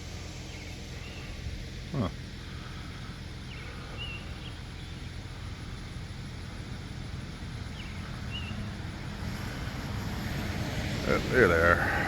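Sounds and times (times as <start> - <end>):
steady low rumble: 0.0 - 12.0
faint bird chirps: 0.2 - 5.3.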